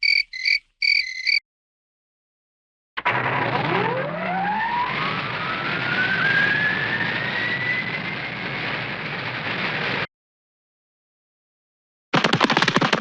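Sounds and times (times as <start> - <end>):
rushing roar with rising whine: 3.1 - 10.1.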